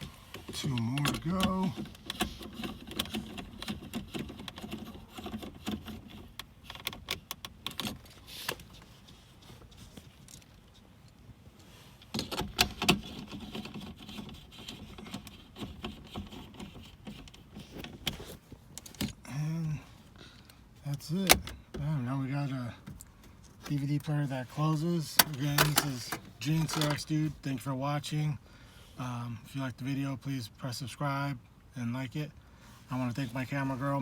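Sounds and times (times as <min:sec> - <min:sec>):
clicks and taps of bolts: 0:25.1 - 0:27.0.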